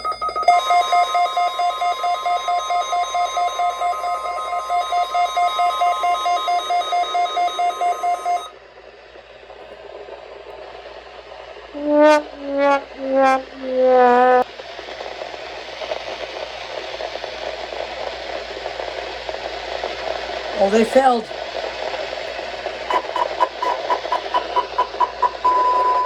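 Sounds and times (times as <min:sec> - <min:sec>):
fast pulsing alarm beep: 0:00.0 - 0:08.5, 0:22.9 - 0:26.0
steady alarm tone: 0:00.0 - 0:08.5, 0:22.9 - 0:26.0
radio hiss: 0:22.9 - 0:26.0.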